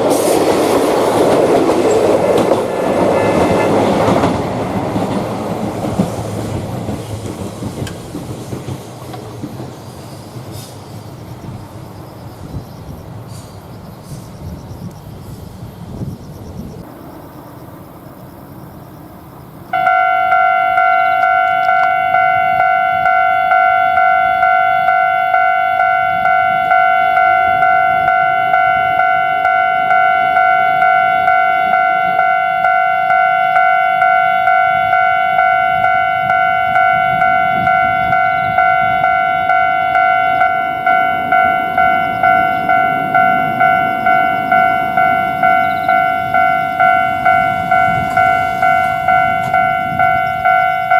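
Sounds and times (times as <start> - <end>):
level crossing warning bell: 0.0 - 8.3, 19.7 - 50.9.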